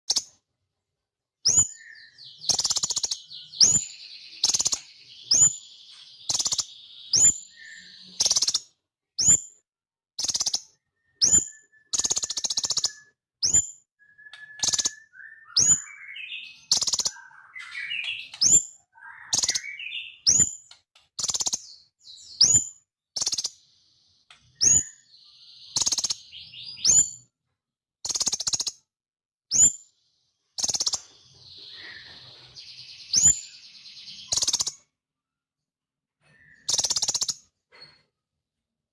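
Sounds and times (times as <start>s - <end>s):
rising bird twittering: 1.4s - 9.4s, 10.2s - 27.2s, 29.5s - 34.9s, 36.2s - 37.6s
buzzy bird trills: 30.6s - 34.8s, 36.3s - 37.5s.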